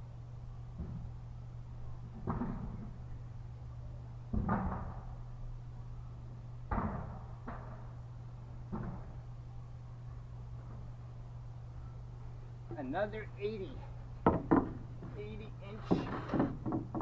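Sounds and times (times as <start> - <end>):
steady low hum: 0.0 - 17.0
wooden boards knocking: 14.2 - 17.0.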